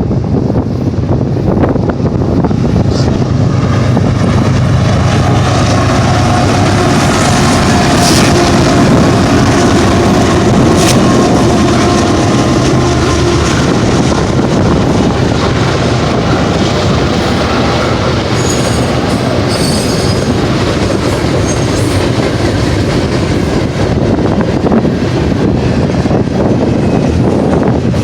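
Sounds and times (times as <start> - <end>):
wind buffeting microphone: 0.0 - 28.0
train wheels clattering on rails: 1.4 - 28.0
high wheel squeal: 18.3 - 20.5, 21.3 - 22.1.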